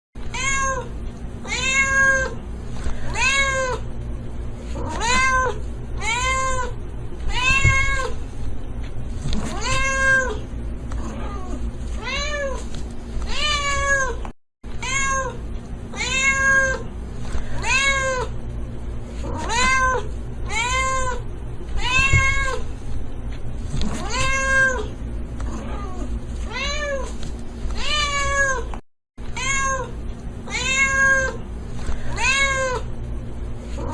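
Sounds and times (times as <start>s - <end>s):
steady low hum: 0.2s - 33.9s
cat meowing: 0.3s - 0.9s, 1.5s - 2.4s, 4.8s - 8.2s, 16.0s - 16.8s, 19.3s - 21.2s, 21.8s - 22.6s, 29.4s - 29.9s, 30.5s - 31.4s, 32.1s - 32.9s.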